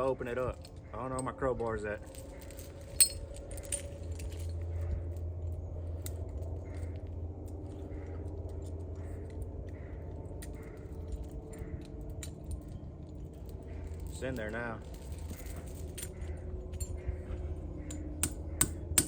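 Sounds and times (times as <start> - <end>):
low hum: 0.0 - 19.0
metal chain clinking: 2.0 - 4.8, 11.0 - 17.0.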